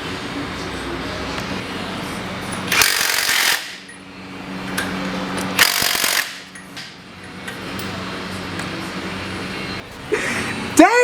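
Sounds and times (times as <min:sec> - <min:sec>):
impact wrench bursts: 0:02.5 - 0:04.0, 0:04.7 - 0:06.6.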